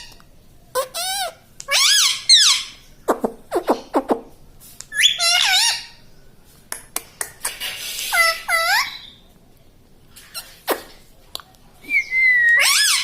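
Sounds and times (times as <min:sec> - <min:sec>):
parakeet squawky chirps and whistles: 0:00.8 - 0:02.8, 0:05.0 - 0:06.0, 0:07.4 - 0:09.2, 0:12.0 - 0:13.0.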